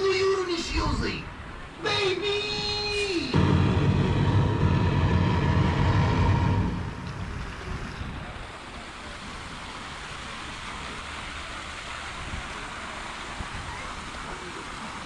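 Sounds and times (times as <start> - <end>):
steady rushing outdoor noise: 0.0 - 15.0.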